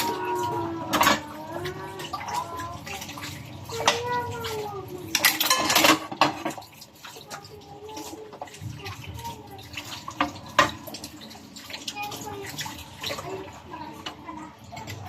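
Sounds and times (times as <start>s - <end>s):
water running: 0.0s - 15.0s.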